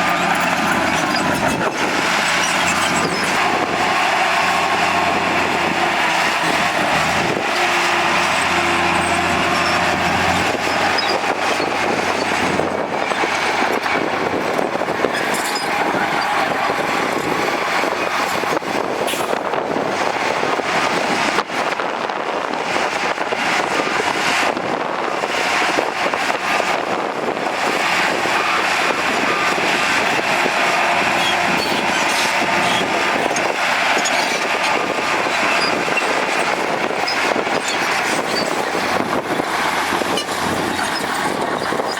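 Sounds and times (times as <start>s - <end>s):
deep engine tone: 0.0s - 19.4s
heavy construction machinery running: 0.0s - 41.9s.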